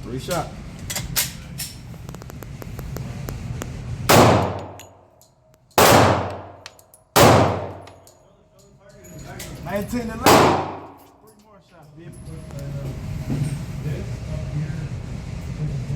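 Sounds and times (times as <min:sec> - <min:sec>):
pistol shots echoing indoors: 0:04.1 - 0:05.0, 0:05.7 - 0:08.2, 0:10.2 - 0:11.1.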